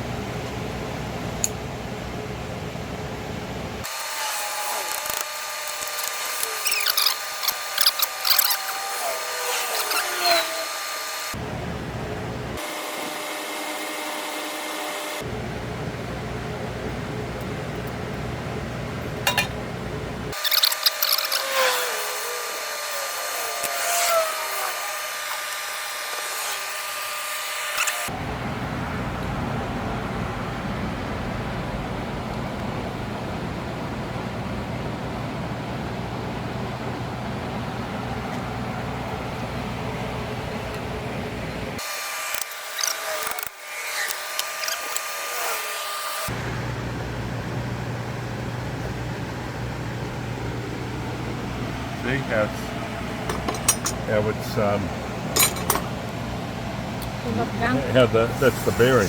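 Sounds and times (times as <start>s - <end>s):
thin squealing tone: 6.0s - 10.9s, 20.4s - 22.6s
metal tool scraping clicks: 53.3s - 54.0s, 55.4s - 55.9s.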